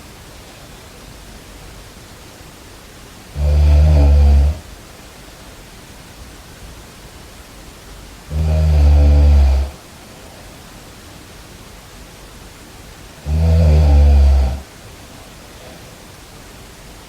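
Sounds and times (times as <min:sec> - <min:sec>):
faint steady hiss: 0:00.0 - 0:17.0
low snore: 0:03.3 - 0:04.7, 0:08.3 - 0:09.8, 0:13.2 - 0:14.7.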